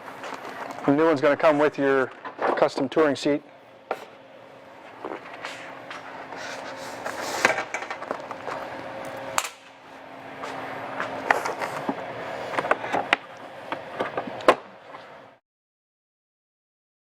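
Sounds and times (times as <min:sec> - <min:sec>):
faint steady hum: 0:00.0 - 0:15.4
motorcycle parts scraping and rattling: 0:04.8 - 0:08.7.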